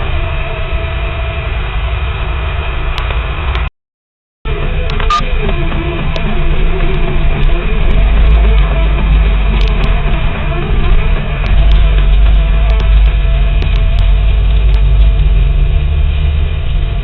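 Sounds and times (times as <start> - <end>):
steady low rumble: 0.0 - 3.7, 4.5 - 17.0.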